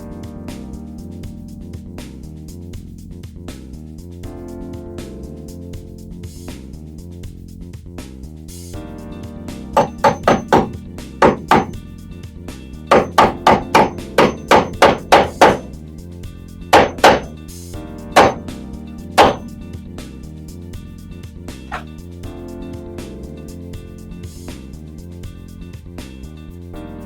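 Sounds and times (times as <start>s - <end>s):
background music: 0.0s - 2.8s, 4.3s - 7.2s, 8.5s - 27.0s
hammer striking staples: 9.8s - 11.8s, 12.9s - 15.7s, 16.8s - 17.4s, 18.2s - 18.5s, 19.2s - 19.5s.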